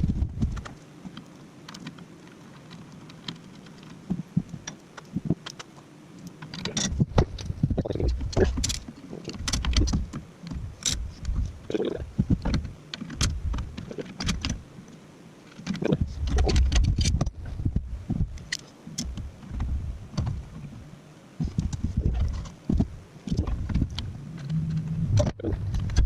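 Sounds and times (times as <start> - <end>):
dull thuds: 0.0 - 0.8, 6.7 - 14.6, 15.8 - 18.4, 21.4 - 26.0
metal parts clinking and clanking: 6.4 - 7.0.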